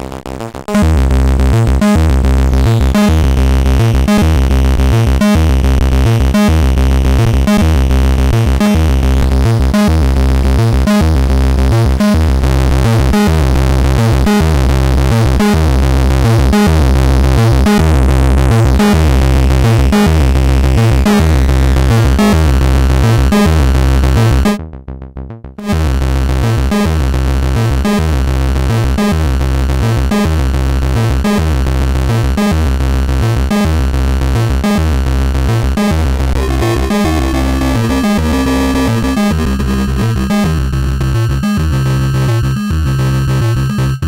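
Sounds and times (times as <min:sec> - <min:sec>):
distorted synthesizer bass pattern: 0:00.0 - 0:14.5, 0:35.8 - 0:41.8.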